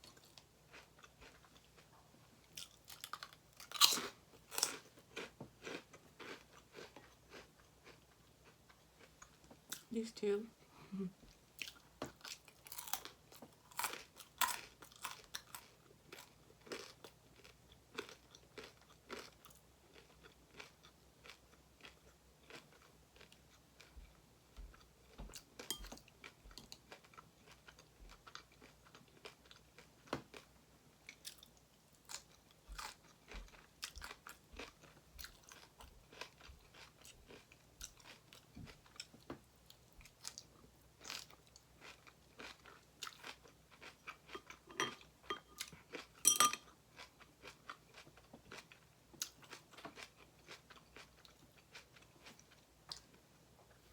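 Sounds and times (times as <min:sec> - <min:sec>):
person chewing crunchy food: 0:00.0 - 0:09.9, 0:11.3 - 0:53.9.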